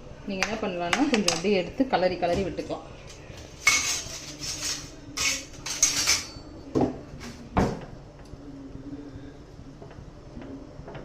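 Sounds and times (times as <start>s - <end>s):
spoon scraping a pan: 3.5s - 6.4s.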